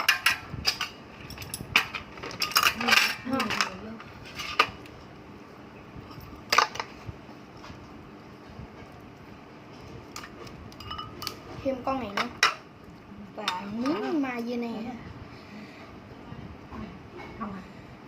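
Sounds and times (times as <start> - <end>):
utensils clinking against a dish: 0.0 - 4.9, 10.1 - 12.6.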